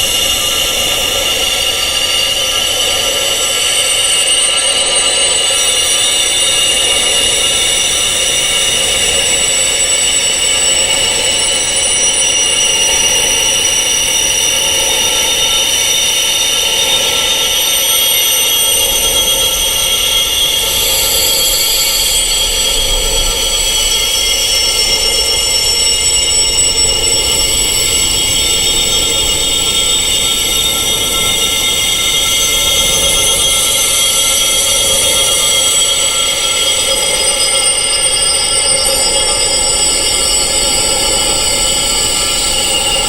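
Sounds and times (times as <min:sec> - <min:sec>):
high-pitched wind chimes ringing: 0:00.0 - 0:43.0.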